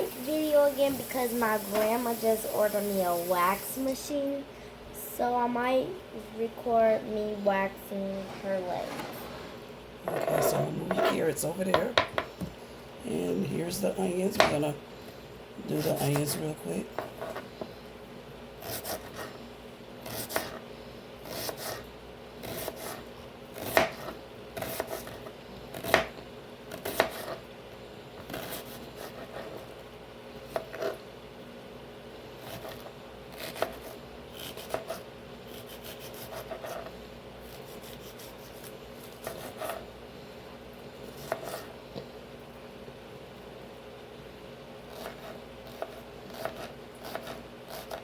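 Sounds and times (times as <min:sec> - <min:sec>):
knife slicing and scraping: 0:32.4 - 0:39.9.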